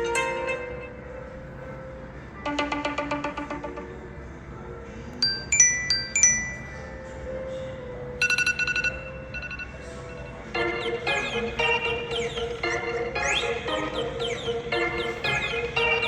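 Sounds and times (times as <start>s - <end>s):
rapidly repeated tones: 0.0s - 4.7s, 8.1s - 16.0s
faint steady hum: 0.0s - 16.0s.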